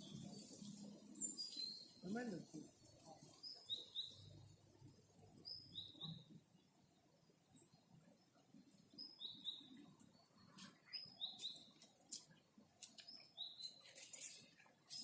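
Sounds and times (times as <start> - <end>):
songbird singing: 0.0 - 15.0
faint clicks: 11.8 - 13.2.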